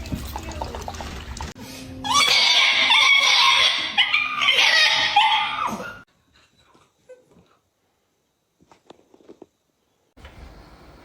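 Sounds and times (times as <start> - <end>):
dog crying high-pitched: 2.0 - 6.0.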